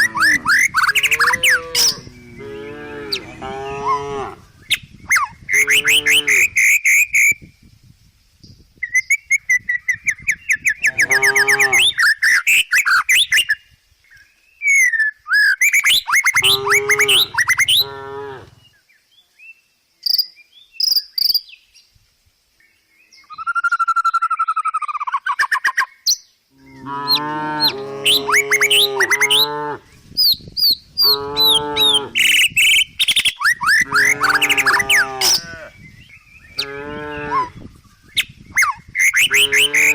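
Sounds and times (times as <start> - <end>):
cattle mooing: 0.0 - 4.4, 10.9 - 11.9, 16.4 - 18.6, 26.6 - 29.8, 31.1 - 32.2, 33.8 - 35.7, 39.3 - 39.9
birds chirping: 0.0 - 7.0, 15.7 - 19.0, 25.9 - 39.9.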